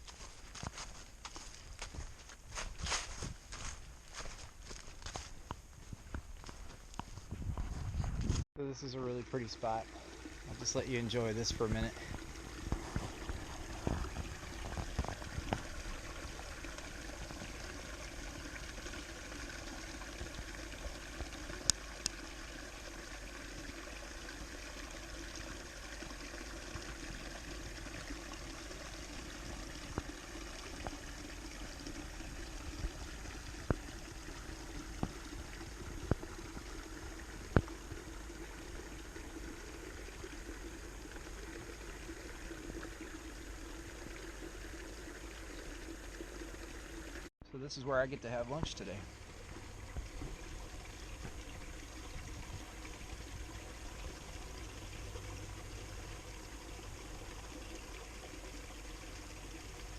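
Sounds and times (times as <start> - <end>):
stream trickling over rocks: 8.6 - 59.9.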